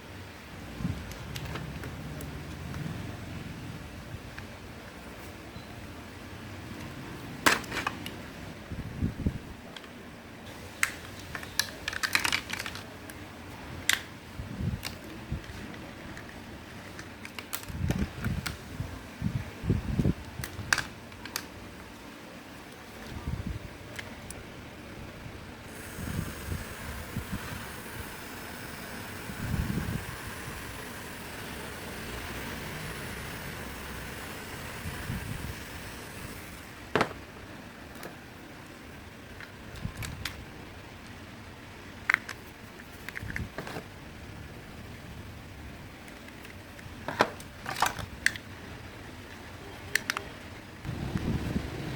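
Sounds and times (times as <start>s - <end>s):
small electric motor whining: 25.7s - 36.9s.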